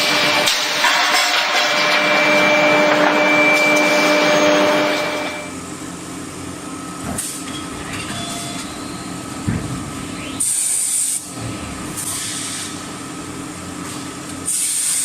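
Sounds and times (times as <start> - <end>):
machine hum: 0.0 - 5.8.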